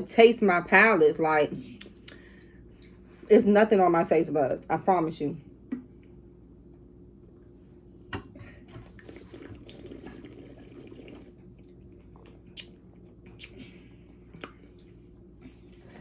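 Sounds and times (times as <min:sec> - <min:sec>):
person gulping and swallowing: 0:08.8 - 0:14.8.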